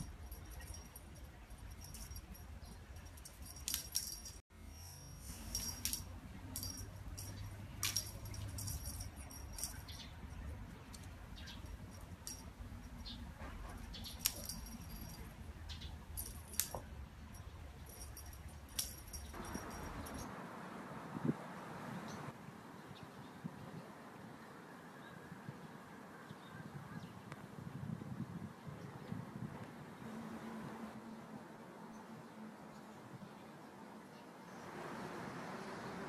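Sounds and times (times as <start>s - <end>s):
light jingling clicks: 0.0s - 4.4s, 5.3s - 20.3s.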